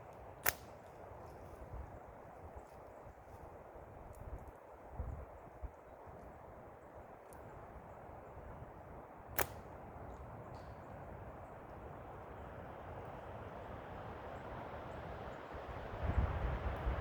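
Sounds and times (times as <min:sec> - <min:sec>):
forest noise hiss: 0:00.0 - 0:17.0
slingshot shot crack: 0:00.4 - 0:00.7, 0:09.4 - 0:09.7.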